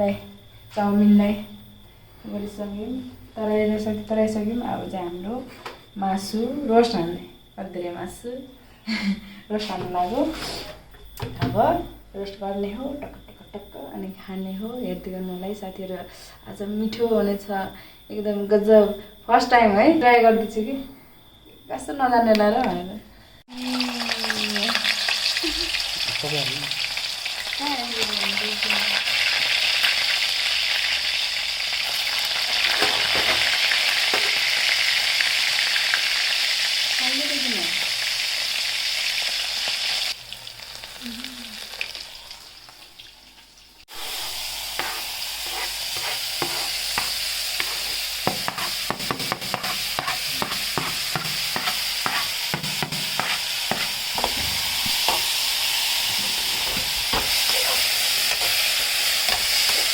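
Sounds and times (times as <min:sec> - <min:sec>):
chicken frying in hot oil: 0:23.5 - 0:59.9.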